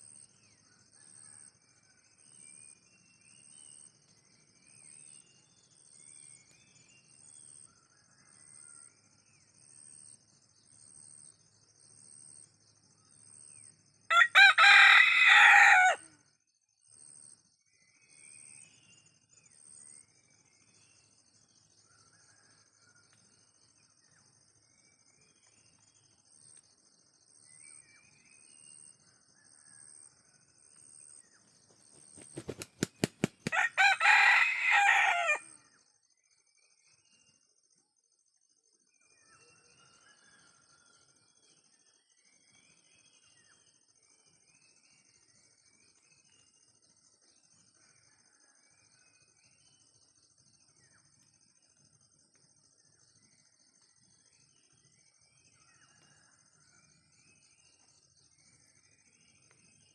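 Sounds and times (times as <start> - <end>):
rooster crowing: 14.1 - 16.2, 33.5 - 35.6.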